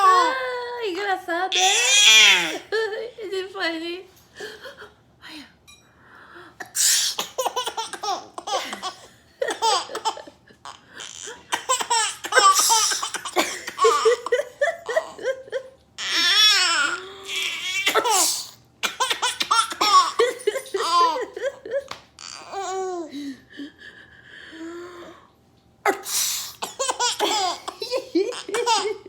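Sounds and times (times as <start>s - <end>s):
baby laughing: 6.9s - 23.1s, 26.6s - 29.0s.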